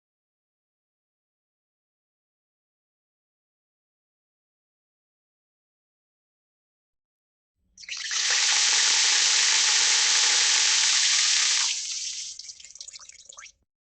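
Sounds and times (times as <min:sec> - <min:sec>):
tap water running into sink: 0:07.8 - 0:13.5
water trickling and dripping: 0:07.8 - 0:13.6.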